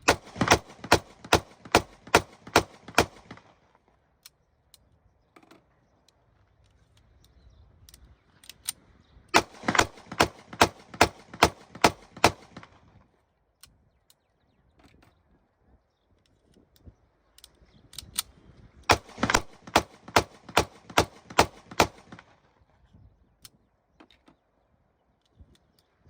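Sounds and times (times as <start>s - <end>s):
pistol shots: 0.0s - 3.6s, 9.4s - 12.8s, 18.9s - 22.4s
faint magazine clicks: 0.1s - 12.8s, 16.2s - 22.6s, 23.4s - 24.4s.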